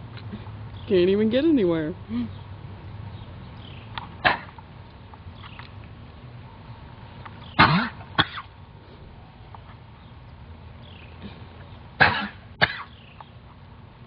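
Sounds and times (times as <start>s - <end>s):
horse coughing: 4.2s - 4.6s, 7.6s - 8.5s, 12.0s - 13.0s.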